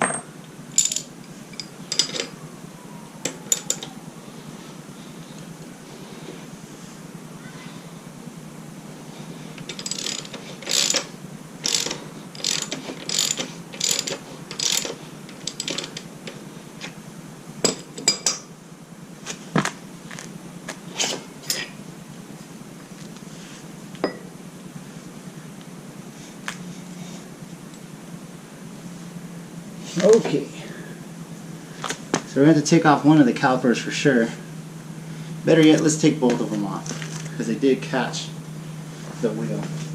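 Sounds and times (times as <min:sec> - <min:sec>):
ratchet wrench clicking: 0:00.8 - 0:02.3, 0:09.6 - 0:16.1
sharp metal clicks and knocks: 0:03.5 - 0:03.9, 0:11.7 - 0:16.4.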